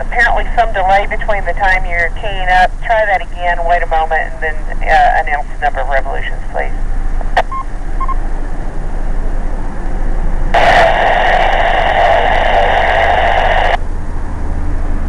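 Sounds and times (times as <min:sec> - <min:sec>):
quick beeps: 0:07.4 - 0:08.2
harsh radio static: 0:10.6 - 0:13.8.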